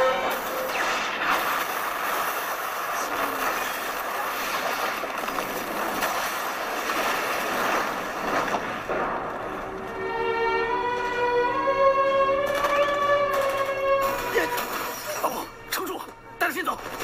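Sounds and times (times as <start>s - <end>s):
string music: 0.0s - 0.7s, 9.7s - 16.7s.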